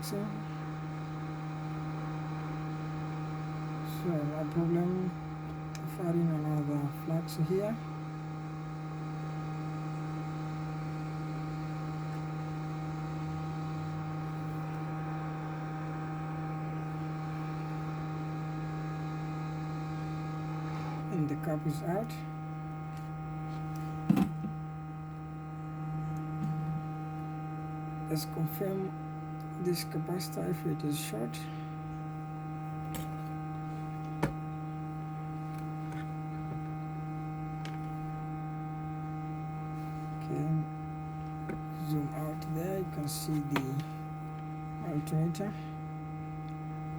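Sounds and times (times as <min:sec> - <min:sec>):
low electrical hum: 0:00.0 - 0:46.9.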